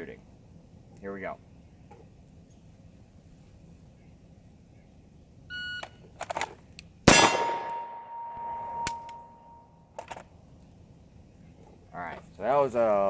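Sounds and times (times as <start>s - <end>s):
pistol draw clicks: 5.8s - 9.3s
pistol shot: 7.1s - 9.3s
steel target ringing: 7.1s - 9.6s
shot timer beep: 7.2s - 9.3s.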